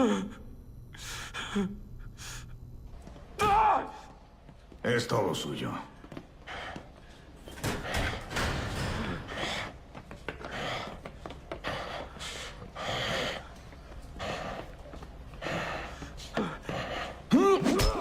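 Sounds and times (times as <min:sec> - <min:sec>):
man gasping and panting: 0:09.2 - 0:18.0.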